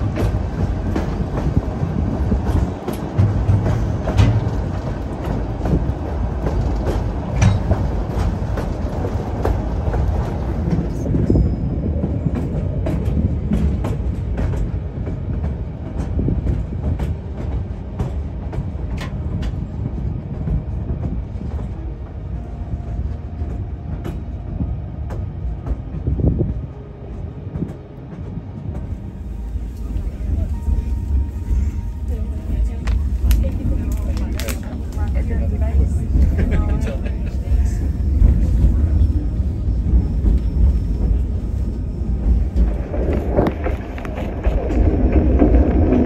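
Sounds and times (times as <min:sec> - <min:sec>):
train wheels rumbling on rails: 0:00.0 - 0:46.0
clicks and knocks from rail joints: 0:02.4 - 0:10.9.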